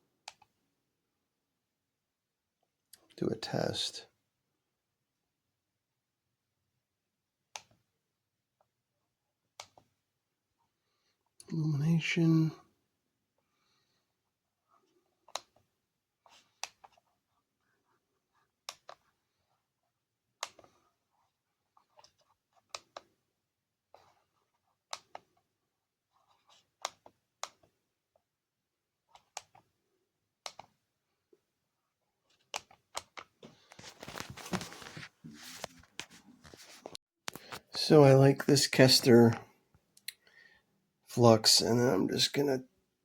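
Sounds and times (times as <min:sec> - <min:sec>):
handling rustle: 0:33.4 - 0:37.6.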